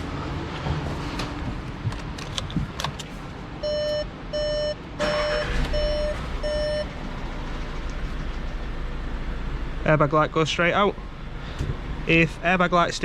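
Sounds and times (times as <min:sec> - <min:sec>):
dashboard warning chime beeping: 0:03.6 - 0:07.2.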